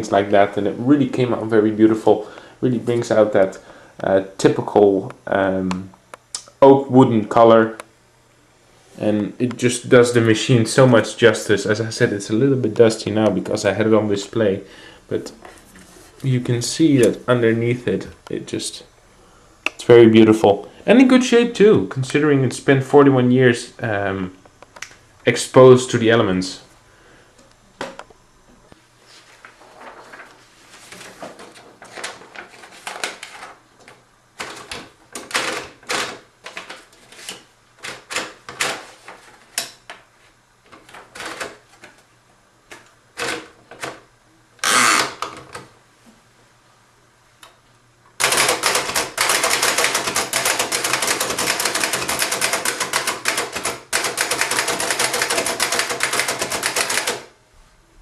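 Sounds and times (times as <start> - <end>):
rapid typewriter typing: 34.4 - 36.8, 37.8 - 38.9, 40.9 - 41.6, 43.2 - 44.0, 48.2 - 57.3
typewriter rasp: 43.2 - 43.9, 44.6 - 45.3, 48.2 - 57.3
typewriter clicks and knocks: 48.2 - 57.3.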